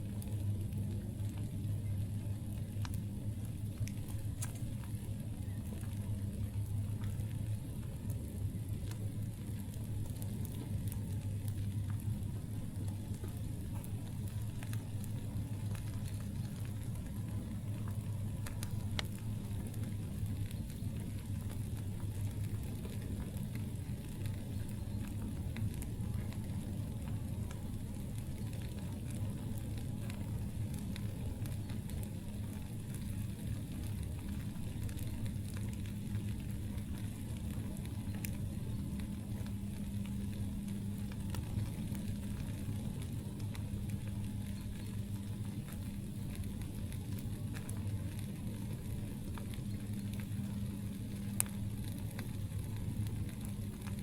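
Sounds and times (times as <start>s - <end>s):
burning wood popping: 0.0s - 54.0s
campfire crackling: 0.0s - 54.0s
low hum: 0.0s - 54.0s.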